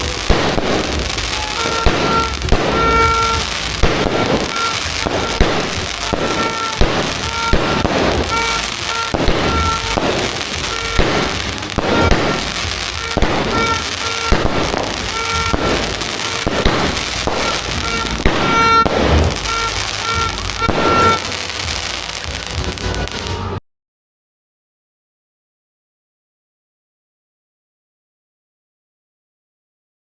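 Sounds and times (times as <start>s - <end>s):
firework crackling: 0.0s - 23.6s
firework shots: 0.0s - 23.6s.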